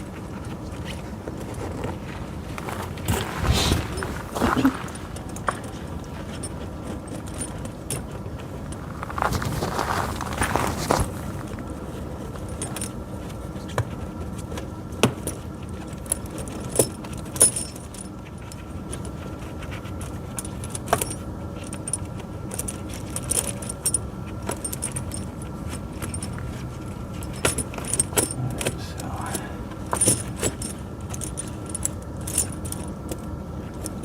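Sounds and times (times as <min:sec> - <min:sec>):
steady low hum: 0:00.0 - 0:34.0
metal chain links clinking: 0:29.8 - 0:32.9.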